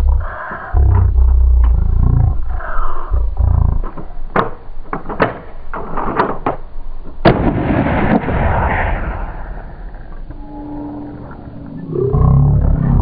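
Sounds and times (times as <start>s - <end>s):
rough animal calling: 0.0s - 4.3s, 10.0s - 13.0s
sharp cracks: 3.8s - 10.4s.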